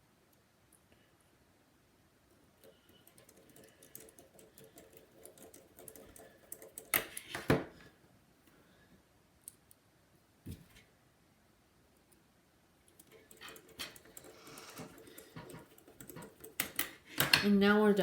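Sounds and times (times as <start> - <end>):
screwdriver clicking and tapping: 13.0 - 17.5.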